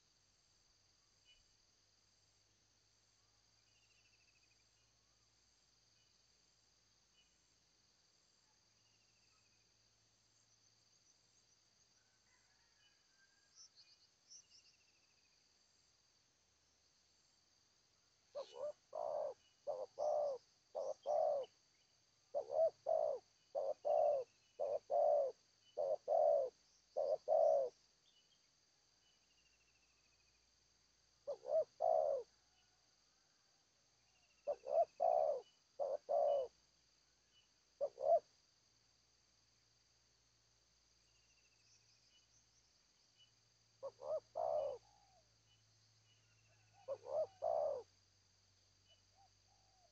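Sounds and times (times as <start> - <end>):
high cricket trill: 18.0 - 28.5, 31.2 - 32.8, 34.2 - 49.9
dove cooing: 18.3 - 21.5, 22.3 - 27.7, 31.2 - 32.4, 34.4 - 36.5, 37.8 - 38.2, 43.8 - 45.2, 46.5 - 47.9.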